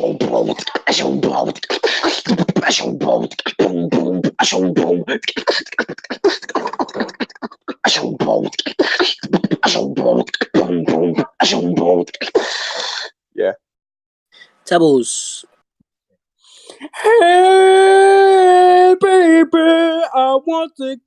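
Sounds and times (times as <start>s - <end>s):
beatboxing: 0.0s - 13.1s.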